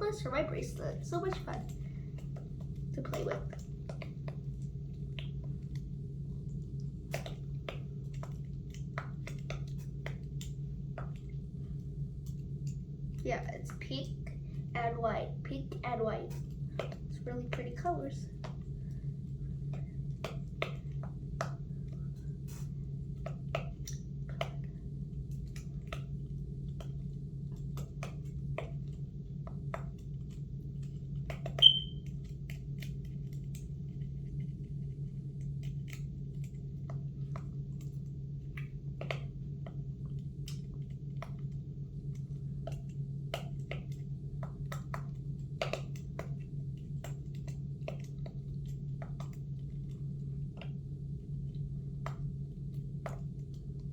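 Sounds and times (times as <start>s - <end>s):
steady low hum: 0.0s - 53.9s
sharp click with high ping: 31.6s - 32.0s.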